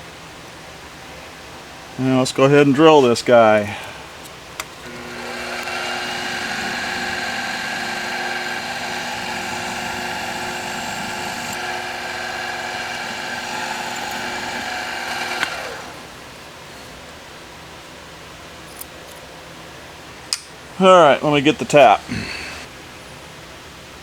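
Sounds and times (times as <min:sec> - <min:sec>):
drill press drilling metal: 0:04.6 - 0:16.3.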